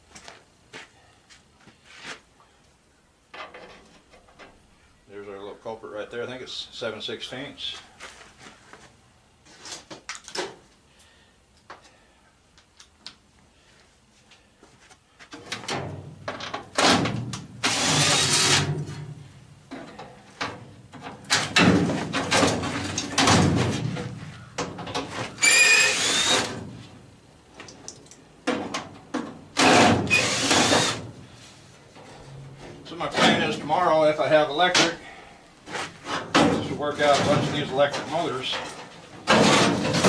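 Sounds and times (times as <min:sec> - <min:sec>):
power drill running in bursts: 0:17.6 - 0:18.6, 0:25.4 - 0:26.6, 0:29.6 - 0:31.0.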